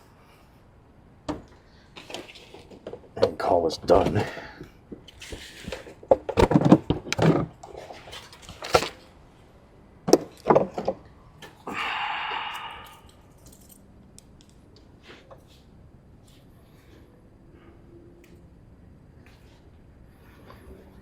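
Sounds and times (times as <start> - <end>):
knocks and rattles of tools: 1.3 - 9.1, 10.1 - 11.6.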